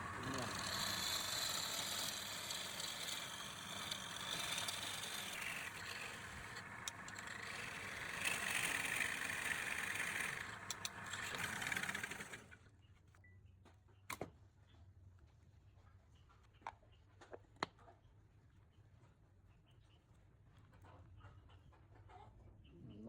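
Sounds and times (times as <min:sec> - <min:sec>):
wood lathe whirring: 0:00.0 - 0:12.6.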